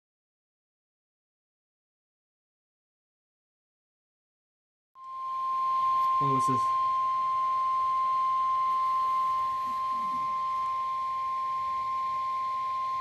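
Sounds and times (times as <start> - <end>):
steady warning beep: 5.0 - 13.0.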